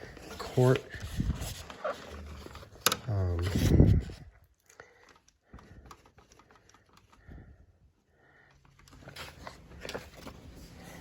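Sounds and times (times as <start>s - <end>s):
faint clicks and knocks: 4.6s - 7.4s.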